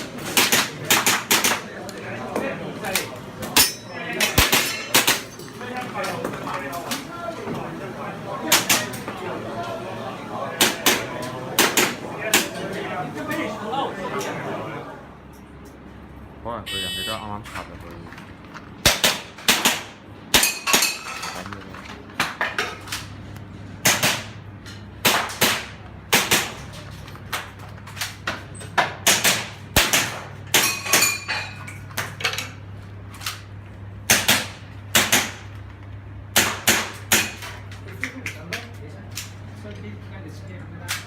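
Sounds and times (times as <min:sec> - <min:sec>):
airsoft pistol shots: 0:18.8 - 0:20.4.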